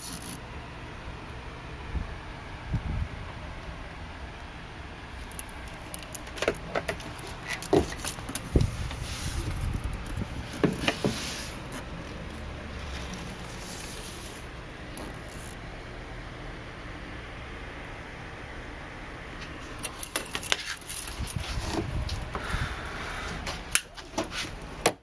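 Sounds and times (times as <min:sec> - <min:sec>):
low background hum: 0:00.0 - 0:25.0
metal clicks and rattling: 0:05.3 - 0:08.6.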